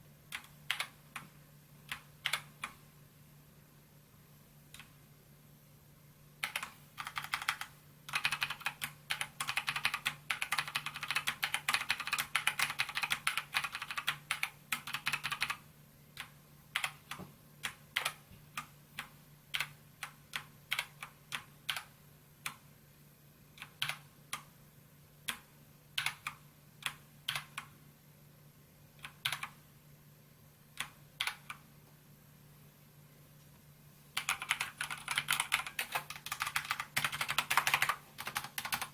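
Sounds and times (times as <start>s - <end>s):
mechanical keyboard typing: 0.3s - 1.3s, 1.9s - 2.8s, 6.4s - 15.6s, 16.2s - 22.6s, 23.6s - 24.5s, 25.3s - 27.7s, 29.0s - 29.6s, 30.8s - 31.6s, 34.2s - 38.9s.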